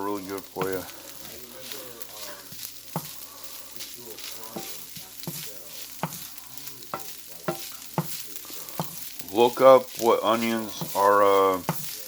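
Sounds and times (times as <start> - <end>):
food sizzling in a pan: 0.0 - 12.0
utensil knocking against pan: 10.6 - 12.0.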